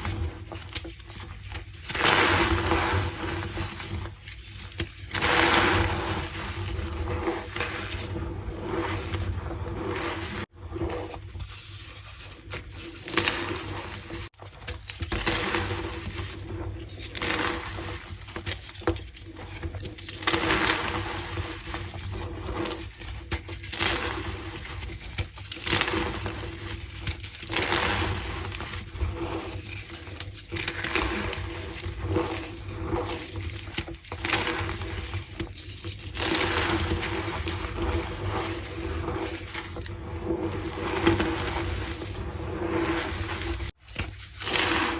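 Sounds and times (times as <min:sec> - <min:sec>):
chalk crunching by hand: 0:17.0 - 0:44.9.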